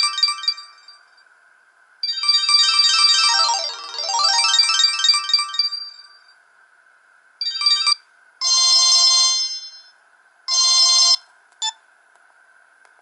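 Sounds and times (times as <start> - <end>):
electronic phone ringtone: 2.0 - 6.3.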